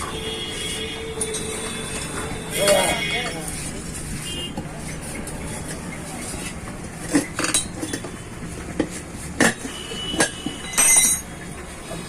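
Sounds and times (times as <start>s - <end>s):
metallic clinks and knocks: 7.0s - 11.4s.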